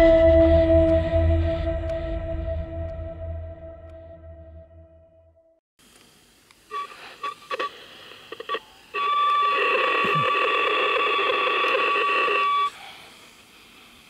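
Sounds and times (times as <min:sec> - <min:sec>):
radio static bursts: 0:06.7 - 0:12.8
loud steady multi-pitch tone: 0:08.4 - 0:12.7.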